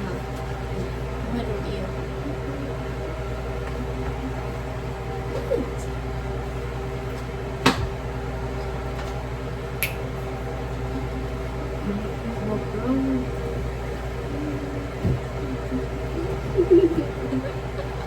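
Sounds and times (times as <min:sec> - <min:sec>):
kitchen appliance humming: 0:00.0 - 0:18.0.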